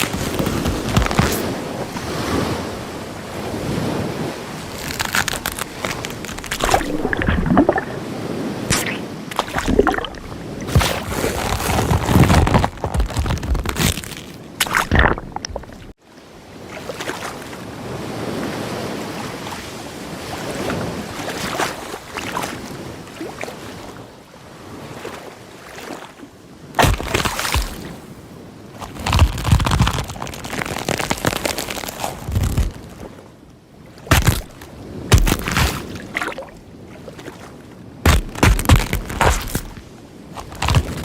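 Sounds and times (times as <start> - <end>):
rushing water: 0.0 - 13.4, 14.6 - 16.0.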